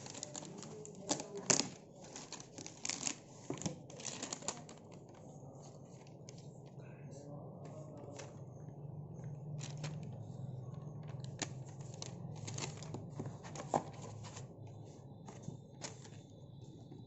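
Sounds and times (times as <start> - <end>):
packaging rustling: 0.0 - 6.4, 9.5 - 14.6, 15.2 - 16.3
low steady hum: 0.0 - 17.0.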